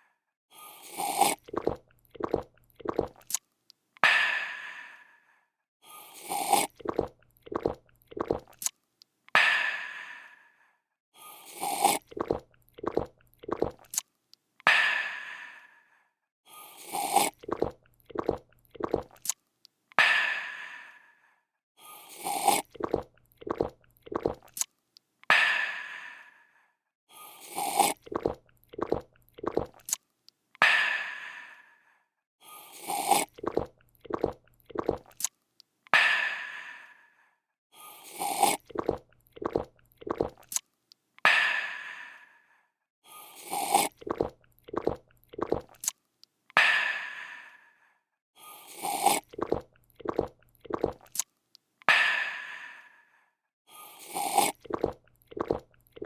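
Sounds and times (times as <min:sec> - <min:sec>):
slurping: 0:00.6 - 0:03.4, 0:06.0 - 0:08.7, 0:11.4 - 0:14.1, 0:16.6 - 0:19.4, 0:22.0 - 0:24.7, 0:27.2 - 0:30.0, 0:32.6 - 0:35.4, 0:37.9 - 0:40.7, 0:43.2 - 0:46.0, 0:48.5 - 0:51.3, 0:53.9 - 0:56.0
gulping swallows: 0:00.8 - 0:03.4, 0:06.2 - 0:08.7, 0:11.5 - 0:14.0, 0:16.8 - 0:19.3, 0:22.1 - 0:24.6, 0:27.4 - 0:30.0, 0:32.8 - 0:35.3, 0:38.0 - 0:40.6, 0:43.4 - 0:46.0, 0:48.7 - 0:51.3, 0:54.0 - 0:56.0.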